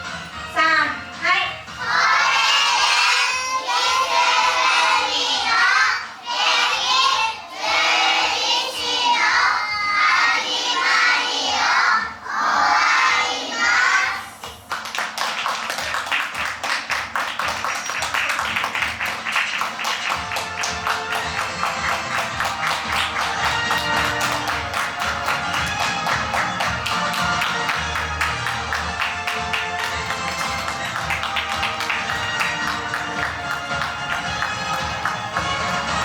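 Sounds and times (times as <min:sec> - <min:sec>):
children speaking in unison: 0:01.8 - 0:14.4
music with tapping beat: 0:14.4 - 0:36.0.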